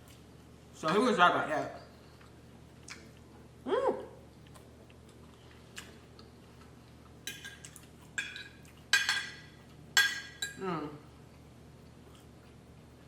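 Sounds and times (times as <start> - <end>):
cutlery clinking on a plate: 7.3 - 10.6.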